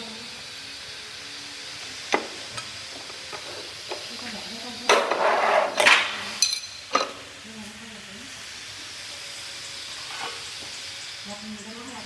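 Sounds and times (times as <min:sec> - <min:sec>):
tile scraping: 0:05.0 - 0:06.0.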